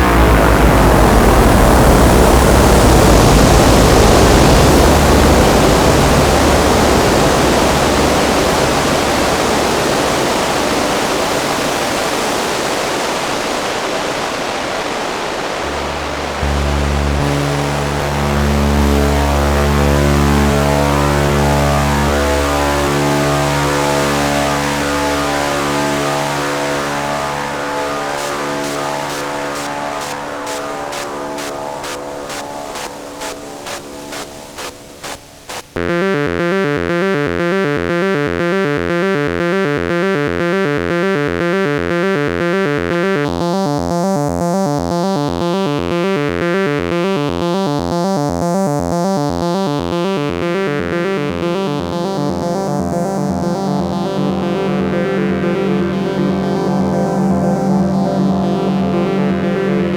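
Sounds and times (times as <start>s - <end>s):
low synth drone: 0.0s - 12.0s, 15.6s - 48.1s
synthesizer hissing wash: 0.0s - 35.8s
repeating pitched synth tones: 15.6s - 56.2s.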